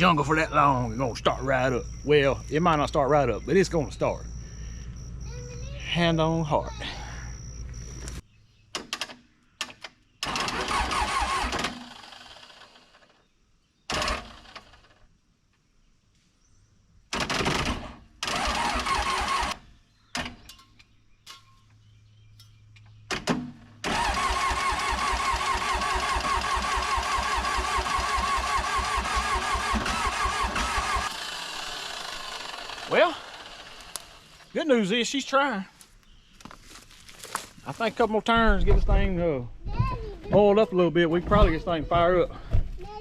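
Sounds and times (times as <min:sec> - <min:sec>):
starter motor cranking diesel engine: 0:10.2 - 0:13.1, 0:13.9 - 0:14.9, 0:17.2 - 0:19.6, 0:23.8 - 0:34.5.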